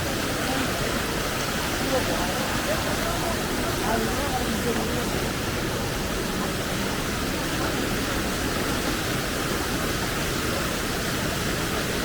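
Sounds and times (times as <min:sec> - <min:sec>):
water rushing: 0:00.0 - 0:12.0.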